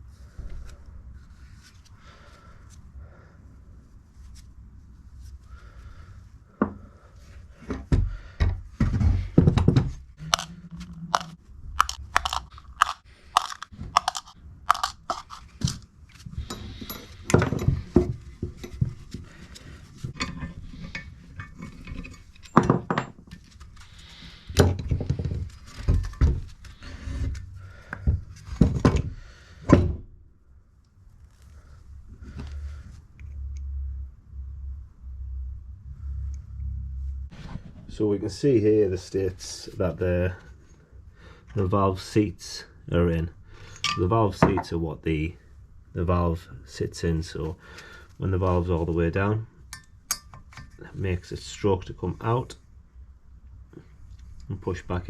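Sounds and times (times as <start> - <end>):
metal parts and tools clinking: 10.2 - 15.8, 16.4 - 18.8, 20.1 - 23.4, 43.7 - 44.7, 49.7 - 50.8.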